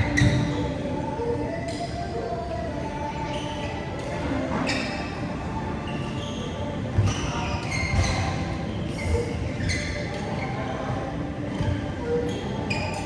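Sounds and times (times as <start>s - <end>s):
shoe squeaks: 0.0s - 0.8s, 5.9s - 10.9s, 12.0s - 13.0s.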